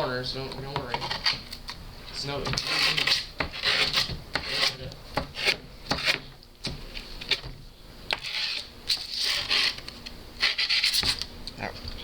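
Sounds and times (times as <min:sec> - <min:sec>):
tool scraping grip tape: 0:02.4 - 0:07.4, 0:08.1 - 0:11.3.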